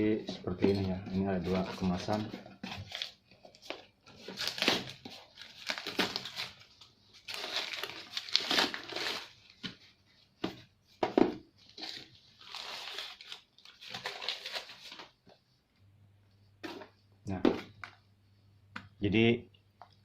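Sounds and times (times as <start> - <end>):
packaging tearing and crinkling: 2.8 - 9.4, 11.7 - 15.1.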